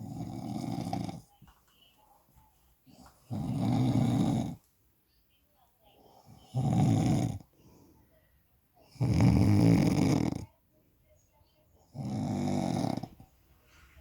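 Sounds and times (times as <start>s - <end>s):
snoring: 0.0s - 1.3s, 3.3s - 4.6s, 6.2s - 7.5s, 8.9s - 10.5s, 11.8s - 13.2s.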